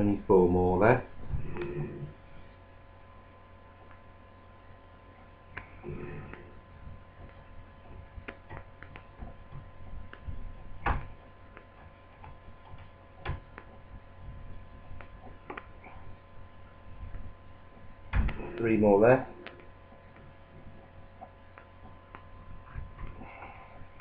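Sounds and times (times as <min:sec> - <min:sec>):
mains hum: 0:00.0 - 0:24.0.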